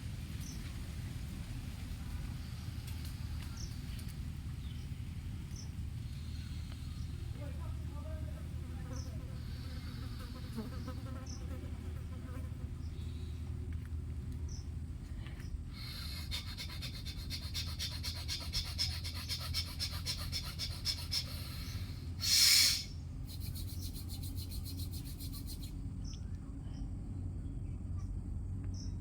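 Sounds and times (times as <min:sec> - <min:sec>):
low steady rumble: 0:00.0 - 0:29.0
insect calling in high pulses: 0:15.8 - 0:26.2.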